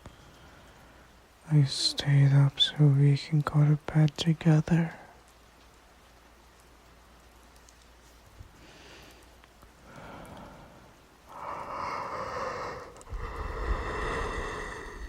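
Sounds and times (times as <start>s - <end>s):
soft breaths: 0.0s - 2.9s, 7.7s - 15.0s
faint background rain: 0.0s - 15.0s.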